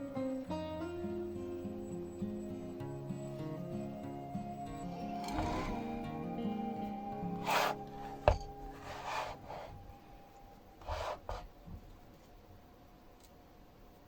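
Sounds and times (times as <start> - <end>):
guitar background music: 0.0 - 10.4
rubbing and scraping noises: 5.2 - 6.0, 7.4 - 10.0, 10.8 - 11.6.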